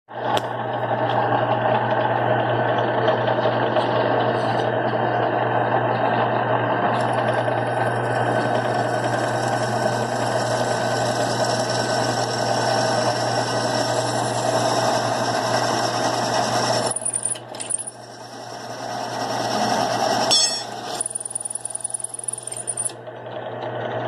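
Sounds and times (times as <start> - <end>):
power tool whirring: 7.0 - 23.0.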